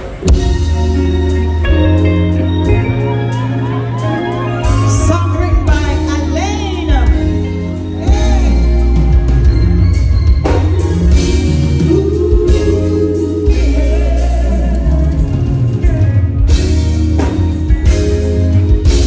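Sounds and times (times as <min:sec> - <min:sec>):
band with drums and guitar: 0:00.0 - 0:19.0
person singing long wavering notes: 0:11.5 - 0:16.5.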